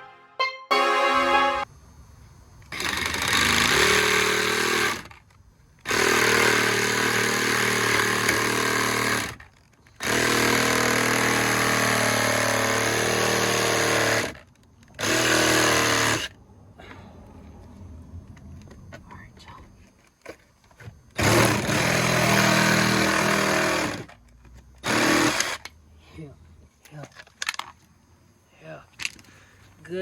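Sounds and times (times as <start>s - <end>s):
handheld power tool running: 2.7s - 16.3s, 21.1s - 24.2s, 24.8s - 25.7s.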